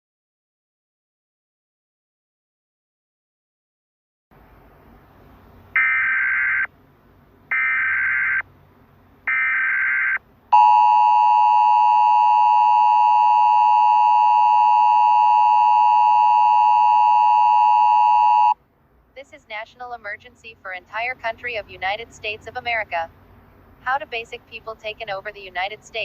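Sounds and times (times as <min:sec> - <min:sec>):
two-tone attention signal: 0:10.6 - 0:18.6.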